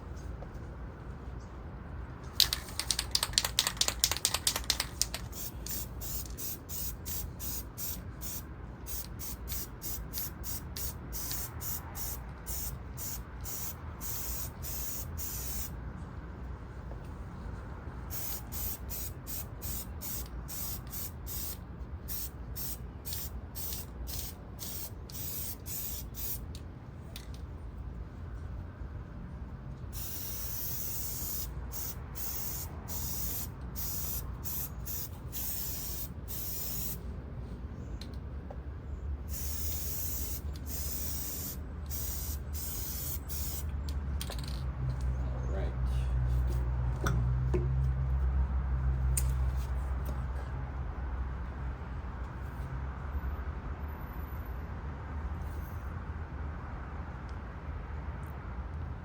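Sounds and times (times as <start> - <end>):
aerosol can rattling: 2.4 - 6.5
short spray bursts: 2.4 - 15.7, 18.1 - 26.4, 29.9 - 37.0, 39.3 - 43.7.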